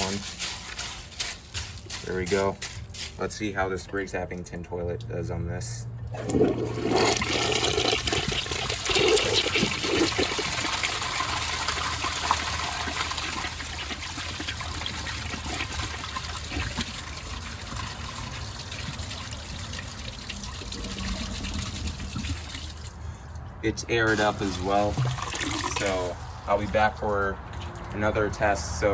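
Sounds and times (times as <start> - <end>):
toilet flushing: 6.1 - 23.2, 24.0 - 26.8
water running as tank refills: 6.2 - 23.4, 24.0 - 28.2.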